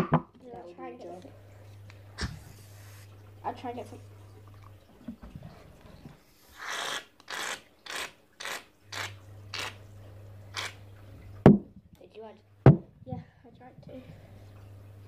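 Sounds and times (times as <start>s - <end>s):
aerosol can sputtering hiss: 2.2s - 3.1s, 6.4s - 9.8s.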